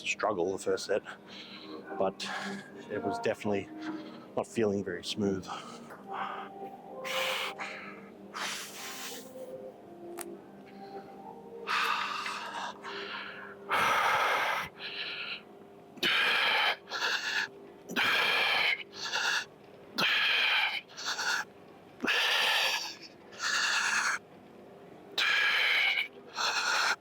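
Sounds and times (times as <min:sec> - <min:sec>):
person breathing hard: 0:03.7 - 0:04.4, 0:05.5 - 0:09.4, 0:10.7 - 0:24.2, 0:25.2 - 0:27.0.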